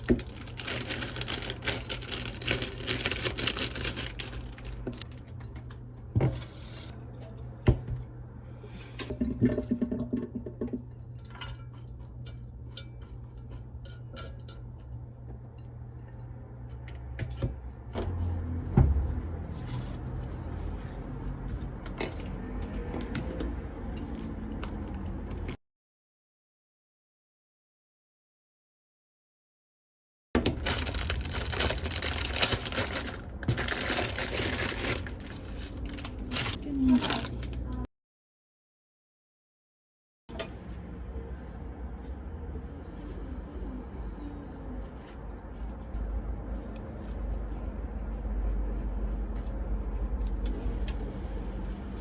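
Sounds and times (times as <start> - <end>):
utensils and dishes clinking: 10.4 - 16.1.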